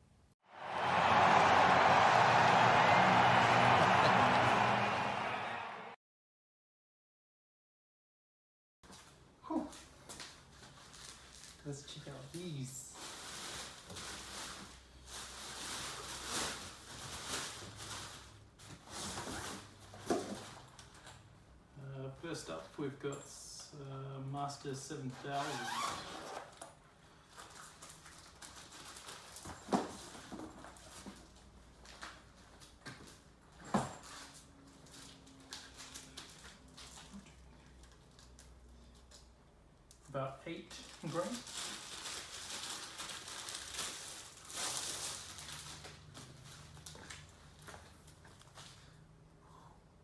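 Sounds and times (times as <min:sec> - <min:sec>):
packaging rustling: 0:40.8 - 0:48.7.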